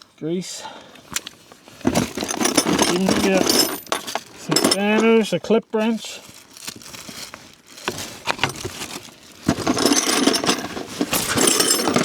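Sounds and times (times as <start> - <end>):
metal hand tools clinking: 1.2 - 5.3, 9.5 - 12.0.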